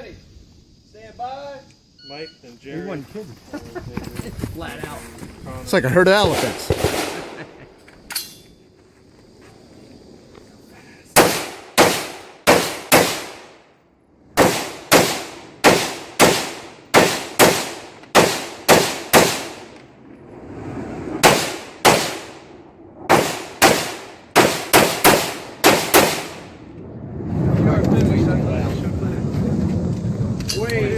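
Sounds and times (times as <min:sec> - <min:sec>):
rifle shots: 0:06.2 - 0:07.5, 0:11.2 - 0:13.6, 0:14.4 - 0:19.8, 0:21.2 - 0:22.5, 0:23.1 - 0:26.6.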